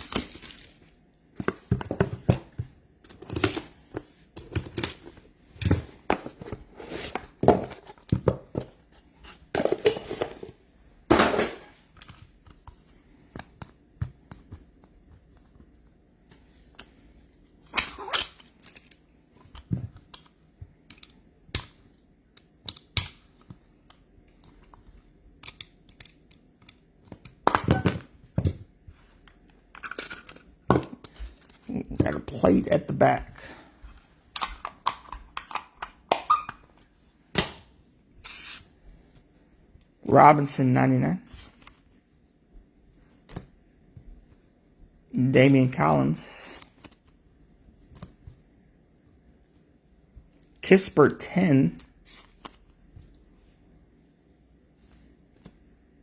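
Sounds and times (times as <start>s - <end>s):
trading cards rustling and clicking: 16.4s - 27.4s.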